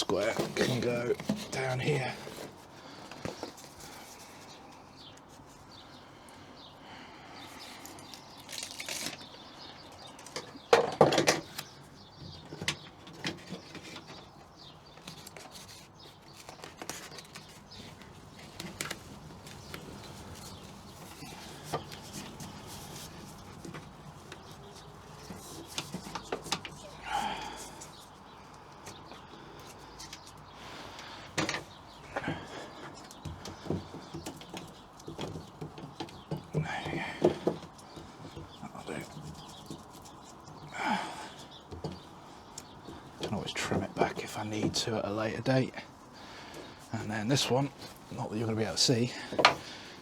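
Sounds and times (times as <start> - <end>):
sheet rustling and crinkling: 0.0 - 5.8, 12.5 - 50.0.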